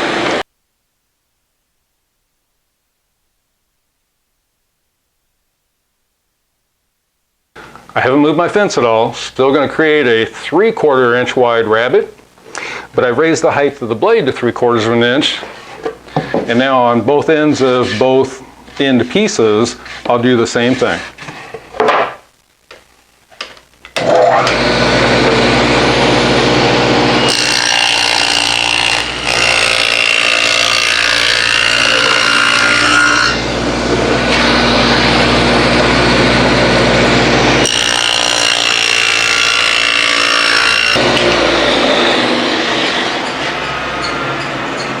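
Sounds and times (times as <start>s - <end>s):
table saw cutting wood: 0.0s - 0.4s, 24.0s - 45.0s.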